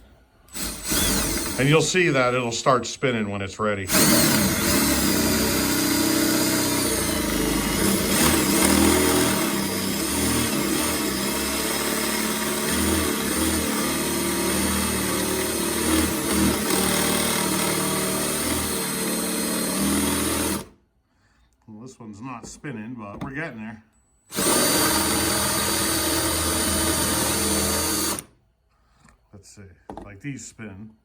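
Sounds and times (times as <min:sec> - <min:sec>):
power drill whining: 0:00.4 - 0:02.4, 0:03.9 - 0:20.8, 0:24.3 - 0:28.4.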